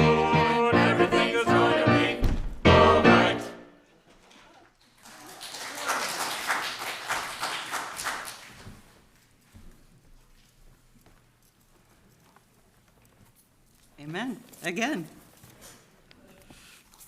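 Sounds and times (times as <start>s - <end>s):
congregation applauding: 4.8s - 8.8s.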